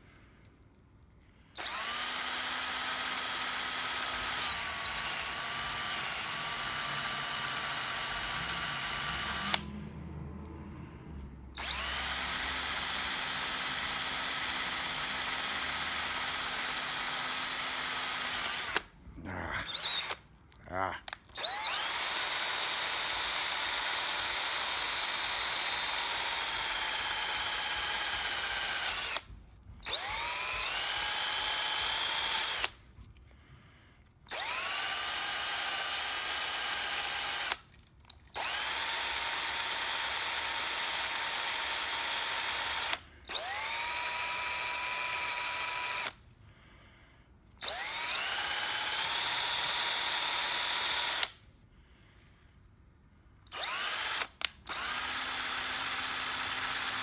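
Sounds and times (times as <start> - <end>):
power wire brush motor whine: 1.6 - 9.7, 11.6 - 18.9, 19.7 - 20.2, 21.4 - 32.8, 34.3 - 37.6, 47.6 - 51.3, 53.5 - 57.0.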